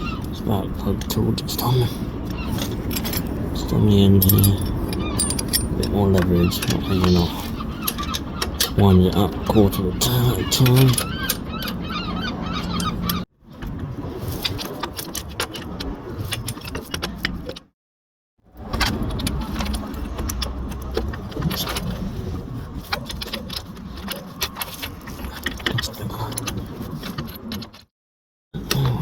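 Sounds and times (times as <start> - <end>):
metallic clinks of hand tool: 4.2 - 6.0.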